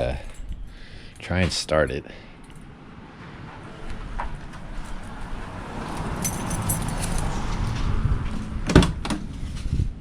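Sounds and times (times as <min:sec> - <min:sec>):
car engine starting and rumbling: 0:02.5 - 0:09.6
keys jingling: 0:05.9 - 0:07.4.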